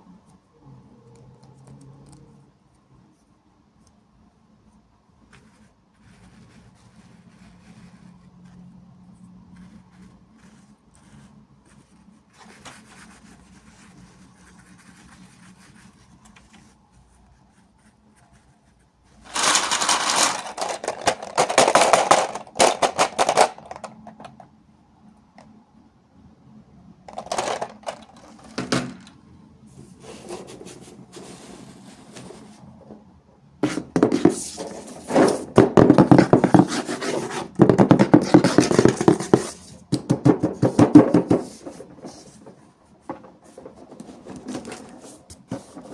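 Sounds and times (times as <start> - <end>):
packaging crinkling and rustling: 19.2 - 24.4, 27.1 - 29.1.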